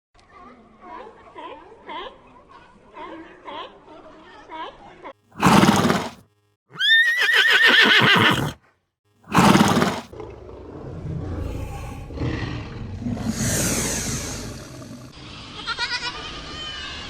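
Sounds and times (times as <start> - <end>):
horse rumbling: 5.4 - 6.2, 6.8 - 8.6, 9.3 - 15.2
horse whinnying: 5.4 - 8.6, 9.3 - 10.1.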